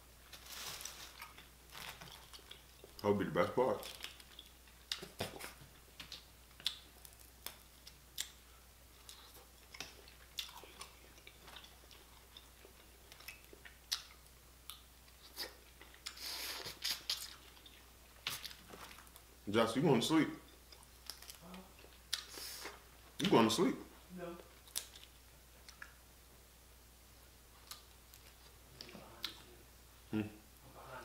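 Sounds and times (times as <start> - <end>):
chewing: 1.1 - 3.0, 3.8 - 8.4, 9.0 - 19.2, 24.6 - 26.0.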